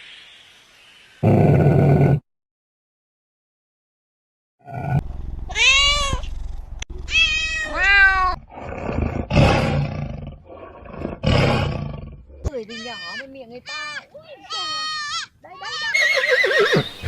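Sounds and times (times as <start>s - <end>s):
animal cries rising and falling: 7.1s - 8.4s, 12.7s - 17.0s.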